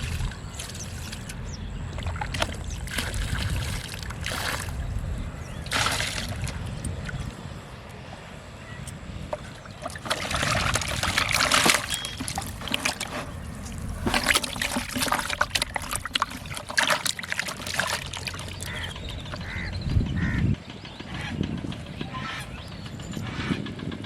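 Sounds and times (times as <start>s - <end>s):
water splashing and trickling: 0.0s - 7.5s, 9.2s - 19.7s.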